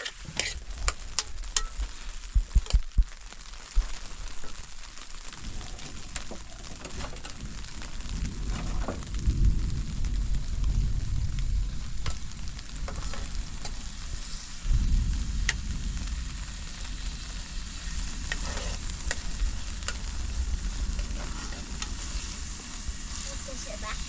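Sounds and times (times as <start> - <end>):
sizzling and crackling: 0.0 - 24.0
low rumble: 5.3 - 24.0.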